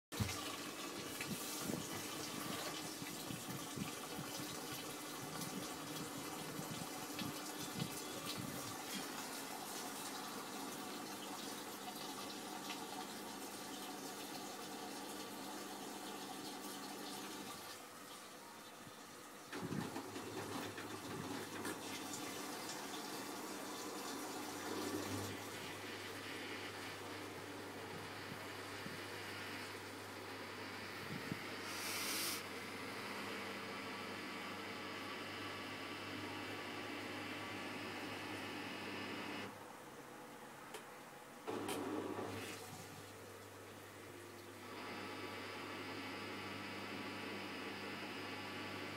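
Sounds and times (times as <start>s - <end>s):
water rushing into washing machine: 0.1s - 31.7s, 41.5s - 43.2s.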